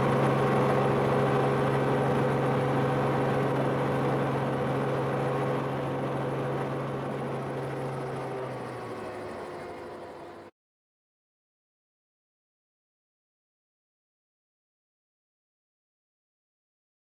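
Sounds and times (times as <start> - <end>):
helicopter engine and rotor: 0.0 - 10.5.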